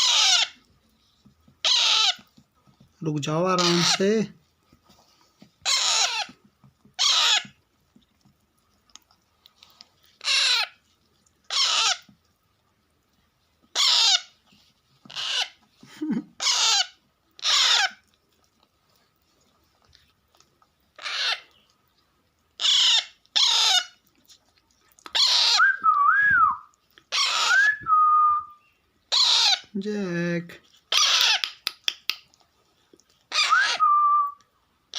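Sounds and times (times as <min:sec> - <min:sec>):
parakeet chicks rasping begging calls: 0:00.0 - 0:00.6, 0:01.6 - 0:02.3, 0:03.3 - 0:04.2, 0:05.6 - 0:06.4, 0:07.0 - 0:07.6, 0:10.2 - 0:10.8, 0:11.5 - 0:12.1, 0:13.7 - 0:14.4, 0:15.1 - 0:15.6, 0:16.4 - 0:18.0, 0:21.0 - 0:21.5, 0:22.6 - 0:24.0, 0:25.1 - 0:25.6, 0:27.1 - 0:27.6, 0:29.1 - 0:29.7, 0:30.9 - 0:31.6, 0:33.3 - 0:33.8
wavering whistle: 0:25.6 - 0:26.7, 0:27.5 - 0:28.6, 0:33.4 - 0:34.4.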